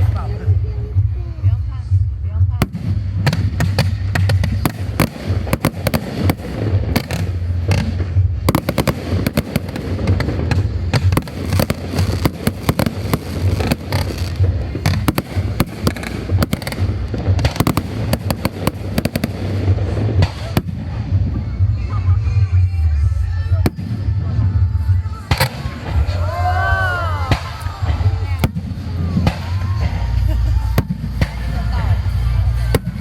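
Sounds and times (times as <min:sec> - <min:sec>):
low rumble: 0:00.0 - 0:33.0
fireworks cracks and bangs: 0:02.6 - 0:21.7, 0:23.6 - 0:33.0.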